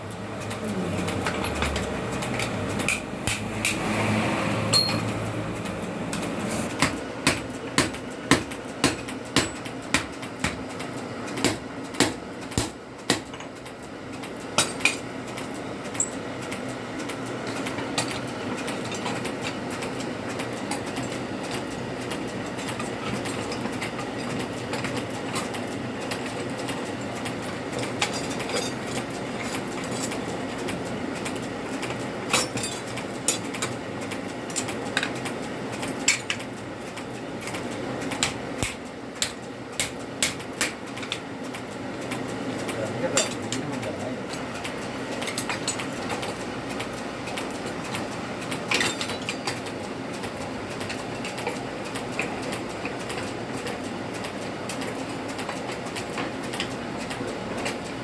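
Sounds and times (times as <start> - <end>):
steady mechanical noise: 0.0 - 58.0
hammer striking steel on anvil: 4.7 - 5.1, 6.8 - 10.6.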